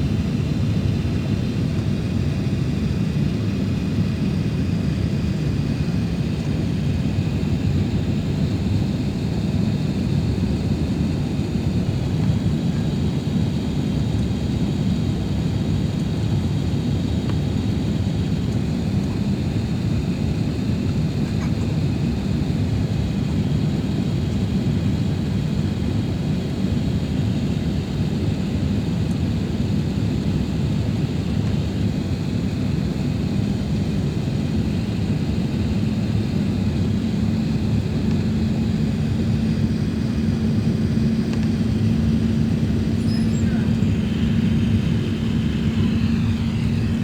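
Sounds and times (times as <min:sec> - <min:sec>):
jet engine roar in cabin: 0:00.0 - 0:47.0
engine hum: 0:34.6 - 0:47.0.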